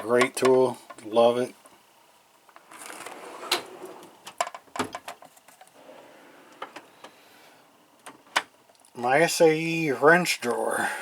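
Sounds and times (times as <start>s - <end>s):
toolbox drawer sliding open: 2.7s - 4.4s.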